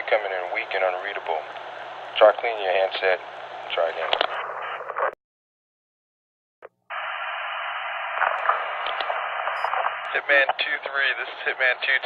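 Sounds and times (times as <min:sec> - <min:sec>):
radio static hiss: 0:00.0 - 0:05.2, 0:06.9 - 0:12.0
radio click: 0:01.4 - 0:01.9, 0:04.0 - 0:05.2, 0:08.1 - 0:10.7.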